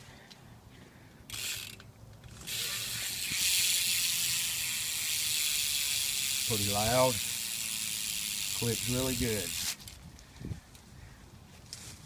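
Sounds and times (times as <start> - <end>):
bike hub ratchet clicking: 1.3 - 10.0.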